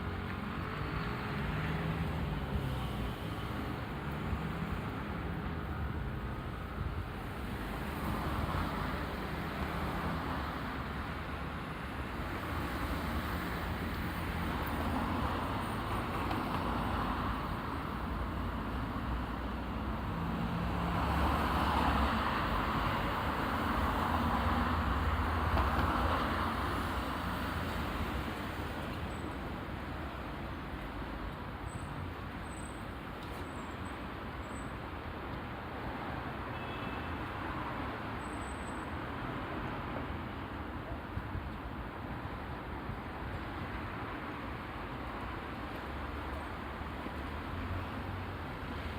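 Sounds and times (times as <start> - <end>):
road traffic: 0.0 - 48.9
cars going by: 19.3 - 29.1.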